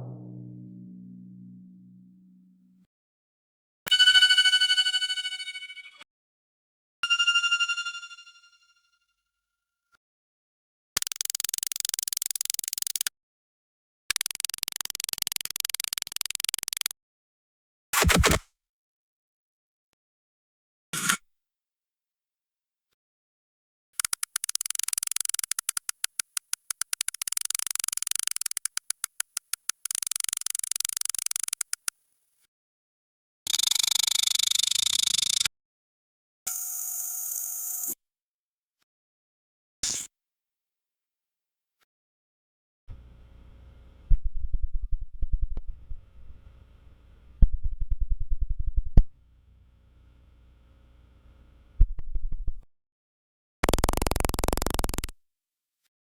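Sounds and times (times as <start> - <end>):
digital loading clicks: 26.8 - 31.9.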